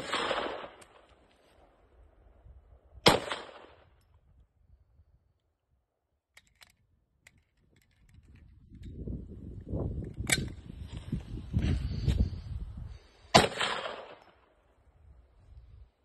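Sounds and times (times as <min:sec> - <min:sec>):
sharp crack: 0:00.0 - 0:01.1, 0:03.1 - 0:03.8, 0:13.3 - 0:14.4.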